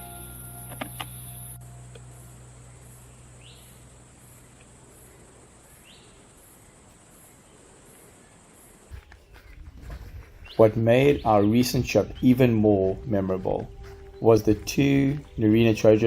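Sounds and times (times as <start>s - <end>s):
low background music: 0.0s - 4.1s, 10.6s - 16.0s.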